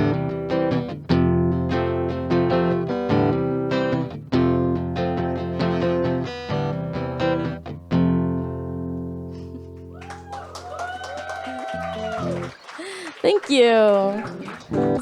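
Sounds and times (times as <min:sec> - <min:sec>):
guitar strumming: 0:00.0 - 0:10.0, 0:13.6 - 0:15.0.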